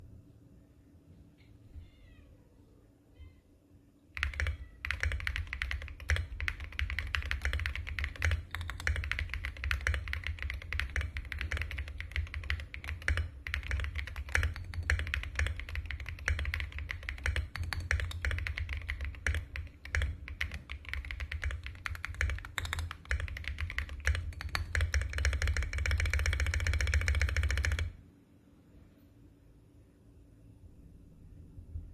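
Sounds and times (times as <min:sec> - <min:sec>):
mechanical keyboard typing: 0:04.2 - 0:28.0.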